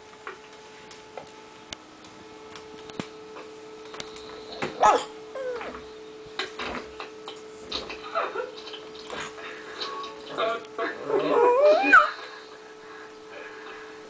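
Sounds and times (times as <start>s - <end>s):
faint hum: 0.0s - 14.0s
dog whine: 4.8s - 5.8s, 11.0s - 12.2s.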